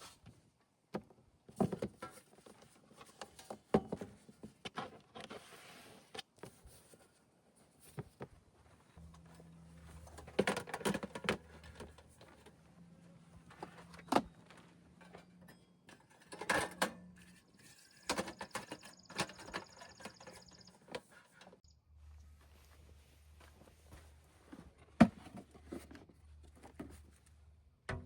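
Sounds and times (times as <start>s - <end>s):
objects knocking and rattling: 9.0s - 12.6s, 13.4s - 21.2s
low steady hum: 9.0s - 16.5s, 21.7s - 28.0s.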